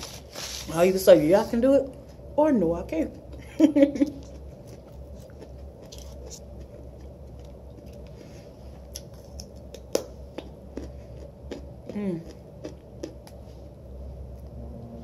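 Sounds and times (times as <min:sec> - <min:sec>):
quiet chewing: 0:04.0 - 0:13.4.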